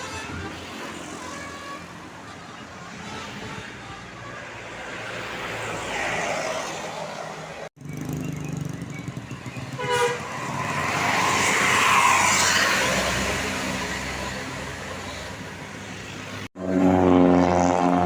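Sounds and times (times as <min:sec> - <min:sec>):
vehicle horn toot: 0:00.0 - 0:02.0, 0:09.7 - 0:10.5
bus passing: 0:00.0 - 0:18.0
roadside traffic: 0:00.0 - 0:18.0.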